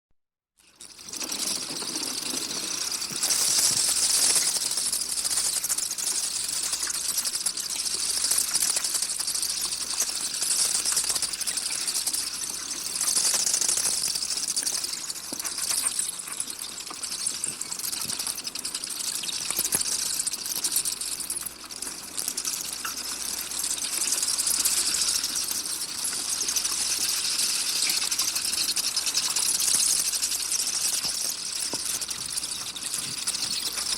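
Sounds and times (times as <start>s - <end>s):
bats chittering: 0.8s - 33.9s.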